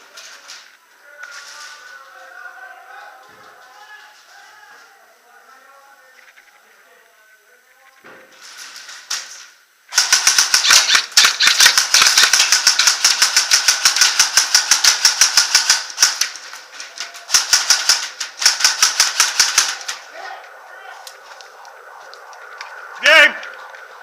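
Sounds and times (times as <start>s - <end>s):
airsoft guns firing: 9.9s - 16.4s, 17.2s - 20.1s.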